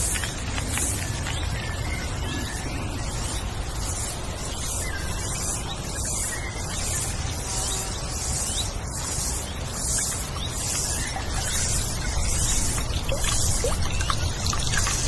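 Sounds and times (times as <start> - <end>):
wind rustling leaves: 0.0 - 15.0
bird chirps: 4.5 - 14.7.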